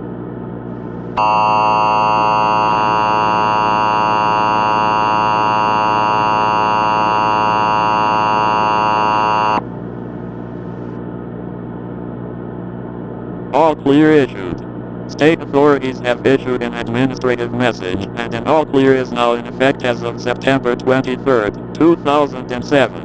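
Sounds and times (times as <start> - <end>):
harsh two-tone alarm: 1.2 - 9.6.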